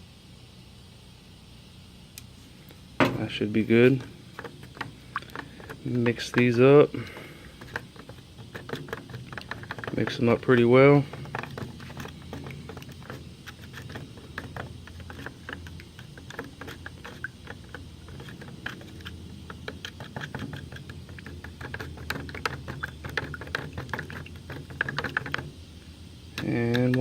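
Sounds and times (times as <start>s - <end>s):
steady low hum: 0.0s - 27.0s
stick tapping against mixing cup: 4.4s - 25.5s.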